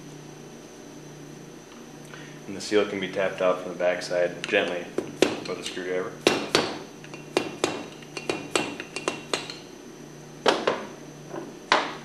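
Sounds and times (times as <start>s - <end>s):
screwdriver tapping metal: 6.5s - 9.6s.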